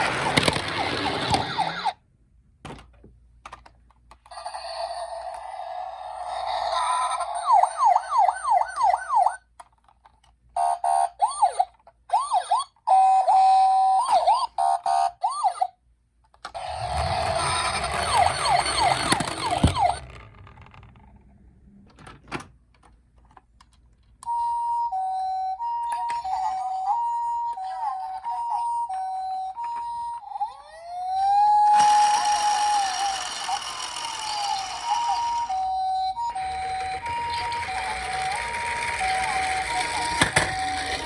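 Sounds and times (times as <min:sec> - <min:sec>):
toy wheels rolling: 0:00.0 - 0:02.0, 0:04.2 - 0:09.9, 0:16.4 - 0:21.4, 0:31.2 - 0:41.0
toy siren wailing: 0:00.5 - 0:02.0, 0:04.3 - 0:09.4, 0:10.6 - 0:15.8, 0:16.6 - 0:20.3, 0:24.3 - 0:41.0
toy siren two-note tone: 0:16.6 - 0:20.2, 0:24.3 - 0:41.0.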